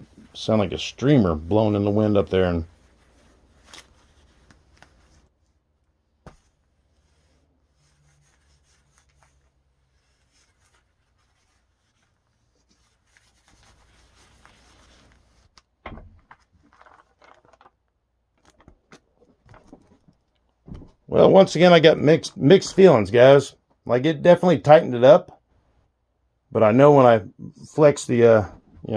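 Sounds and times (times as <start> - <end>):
rustling: 1.4 - 21.1
rubbing plastic film: 2.0 - 20.4.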